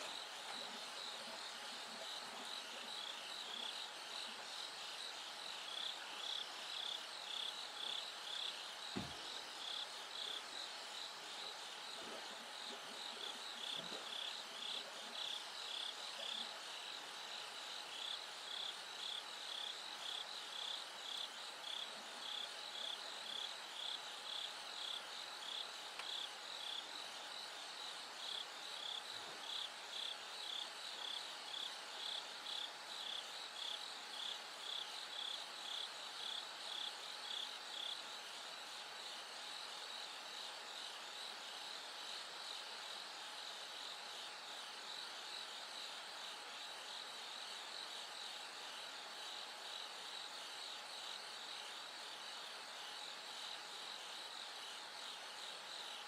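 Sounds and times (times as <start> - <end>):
crickets chirping: 0.0 - 56.0
soft thump: 8.9 - 9.3.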